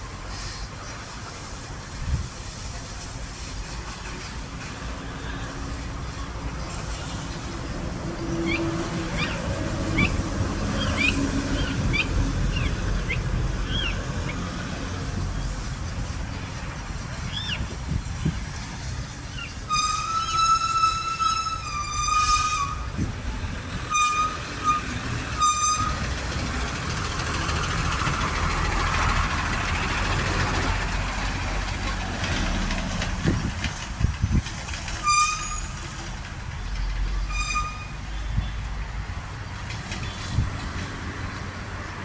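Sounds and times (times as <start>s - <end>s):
passing vehicles: 0.0s - 42.0s
vehicle horns hooting: 23.9s - 26.0s.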